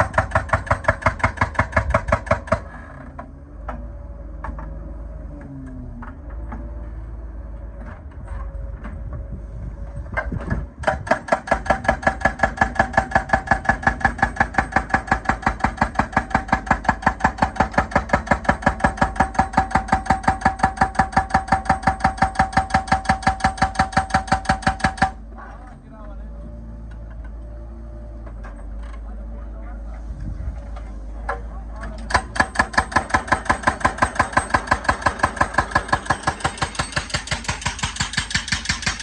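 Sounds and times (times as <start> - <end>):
hydraulic breaker hammering: 0.0 - 2.8, 10.2 - 25.3, 32.0 - 39.0.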